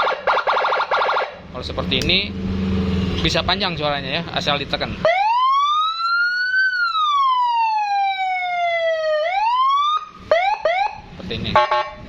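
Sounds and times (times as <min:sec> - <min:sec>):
electronic siren wail: 0:00.0 - 0:01.4, 0:05.0 - 0:11.0
siren rising yelp: 0:05.0 - 0:11.0.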